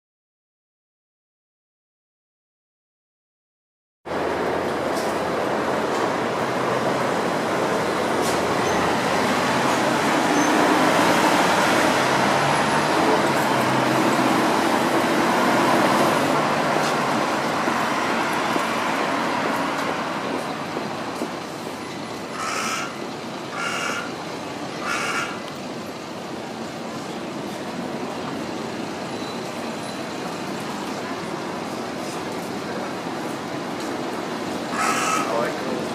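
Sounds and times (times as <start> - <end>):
heavy road traffic: 4.1 - 35.9
crow cawing: 22.3 - 24.2, 24.8 - 25.4, 34.7 - 35.6.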